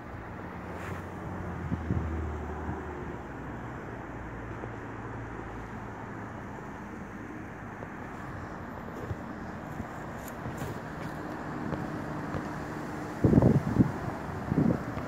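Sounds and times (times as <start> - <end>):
wind noise: 0.0 - 3.2, 7.8 - 15.0
road traffic hum: 0.0 - 15.0.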